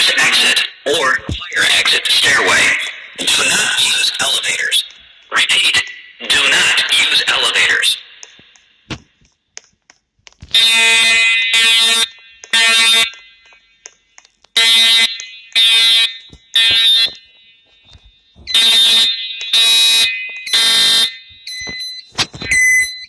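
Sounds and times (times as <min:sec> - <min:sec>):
buzzy fire alarm blasts: 0:00.0 - 0:08.9, 0:10.5 - 0:13.9, 0:14.6 - 0:23.0
spoken messages: 0:00.0 - 0:09.7, 0:10.4 - 0:19.0.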